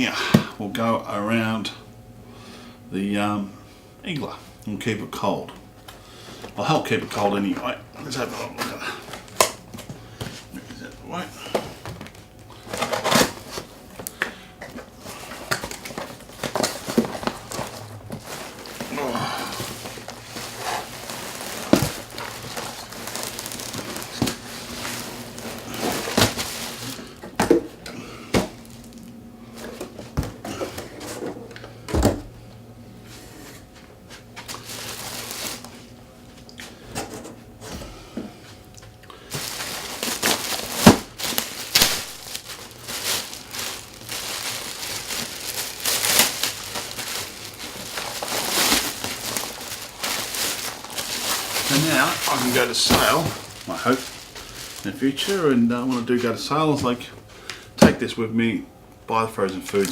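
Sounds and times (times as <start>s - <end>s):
packaging crinkling: 11.4s - 31.7s, 34.4s - 36.8s, 39.1s - 56.9s, 59.5s - 59.9s.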